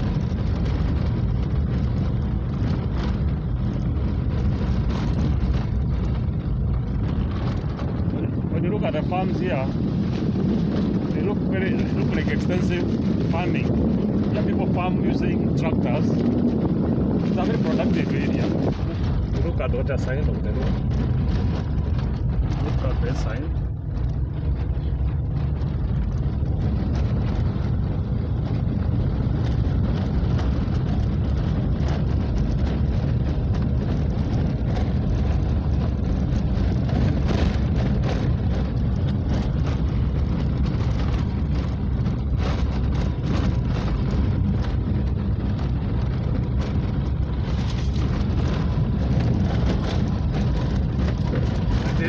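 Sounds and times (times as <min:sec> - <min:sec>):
car driving along road: 0:00.0 - 0:52.0.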